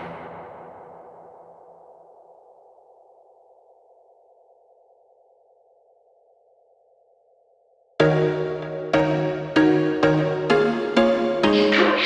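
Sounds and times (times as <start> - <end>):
song with sustained chords: 0.0 - 1.4, 8.0 - 12.0.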